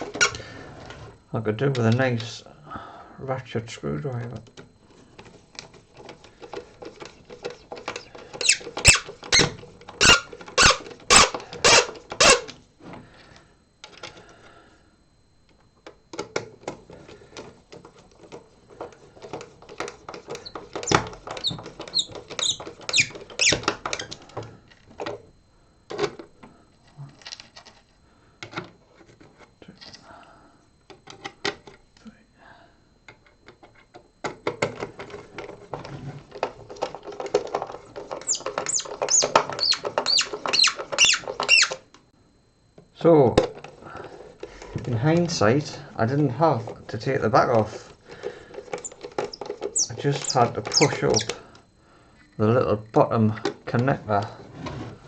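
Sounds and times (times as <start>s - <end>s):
screwdriver squeaking and clicking: 7.5s - 12.5s, 20.2s - 24.2s, 38.1s - 41.8s, 48.8s - 51.4s.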